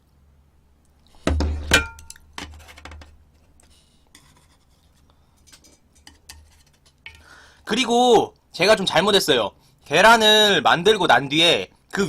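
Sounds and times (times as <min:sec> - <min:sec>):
tableware clinking: 0:01.3 - 0:02.5.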